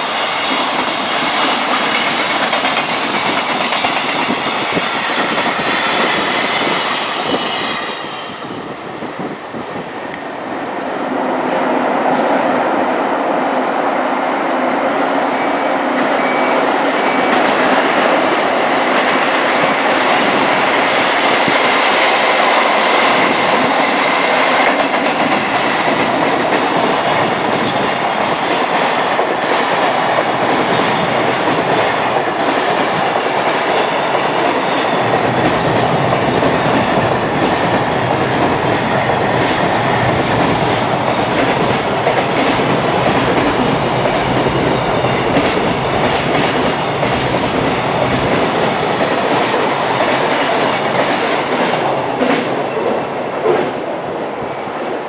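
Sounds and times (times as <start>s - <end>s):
train wheels clicking over rail joints: 0.0s - 11.1s, 21.2s - 52.6s
train rumble: 0.0s - 55.0s.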